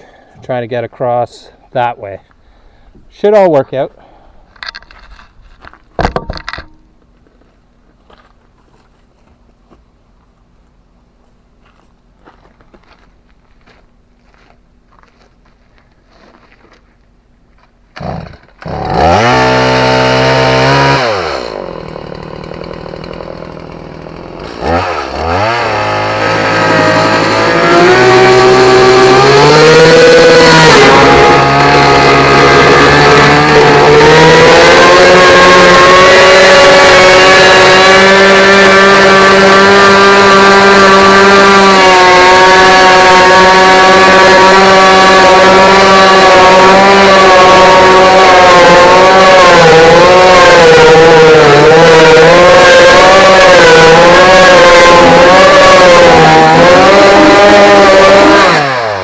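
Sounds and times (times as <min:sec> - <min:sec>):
chainsaw cutting fiberglass hull: 0:18.0 - 0:59.0
two-stroke chainsaw revving: 0:18.0 - 0:59.0.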